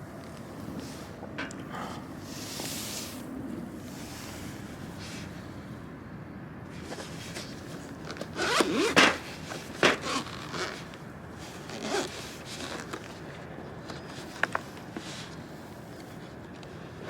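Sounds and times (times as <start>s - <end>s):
zipper rasping: 8.4s - 9.2s, 9.9s - 10.9s, 11.6s - 12.9s.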